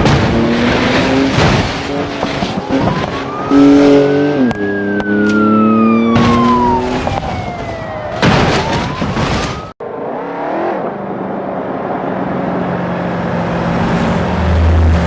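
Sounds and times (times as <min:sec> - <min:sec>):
toy siren tone rising and falling: 0:02.7 - 0:09.7.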